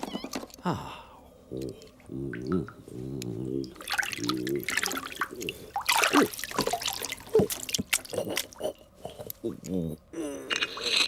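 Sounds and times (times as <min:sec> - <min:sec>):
water splashing and dripping: 0:03.6 - 0:08.7.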